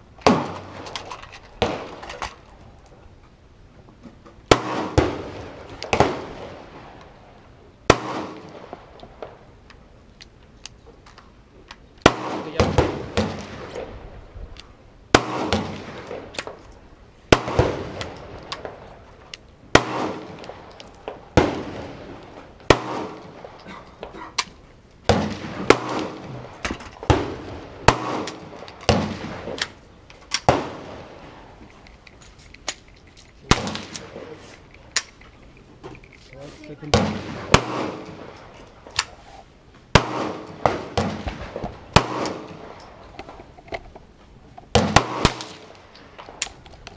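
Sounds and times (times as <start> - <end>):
gunshots with echo: 12.0 - 13.9, 15.1 - 16.3, 19.8 - 23.6, 25.1 - 29.6, 36.9 - 38.4, 40.0 - 42.8, 44.8 - 45.8.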